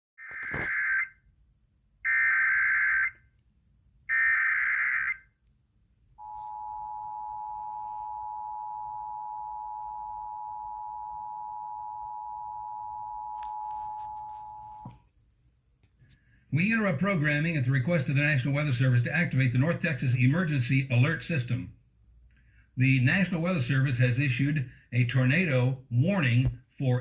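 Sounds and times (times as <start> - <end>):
two-tone attention signal: 6.2 - 14.9.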